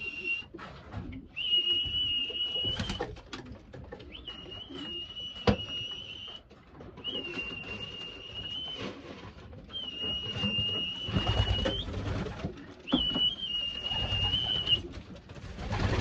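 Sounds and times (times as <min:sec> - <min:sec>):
pigeons cooing: 0:00.0 - 0:16.0
whistle long notes: 0:01.4 - 0:03.1, 0:04.2 - 0:06.4, 0:07.0 - 0:09.0, 0:09.7 - 0:12.0, 0:12.9 - 0:14.9.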